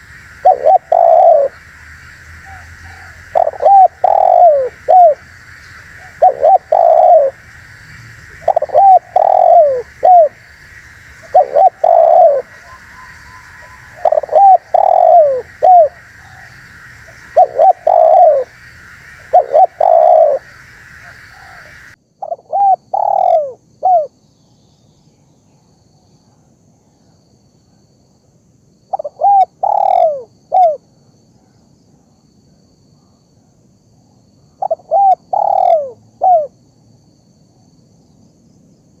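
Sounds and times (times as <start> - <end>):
dove cooing: 0.0 - 24.1, 28.9 - 30.8, 34.6 - 36.5
steady background hiss: 0.0 - 39.0.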